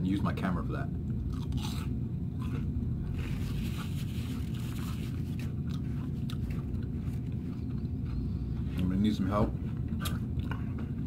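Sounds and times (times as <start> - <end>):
steady low rumble: 0.0 - 11.0
crunchy chewing: 1.1 - 8.9, 9.6 - 11.0
scratchy rustle: 3.2 - 5.5.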